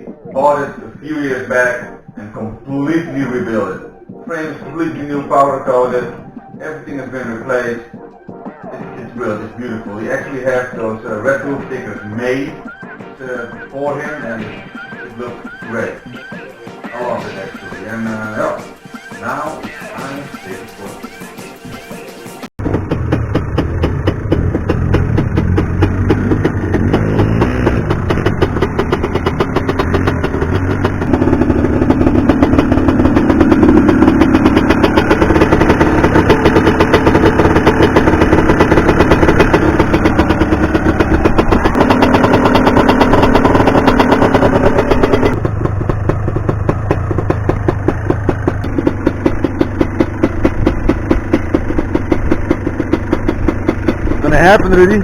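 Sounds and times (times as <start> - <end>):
two-stroke quad engine revving: 8.8 - 12.7, 22.6 - 55.0.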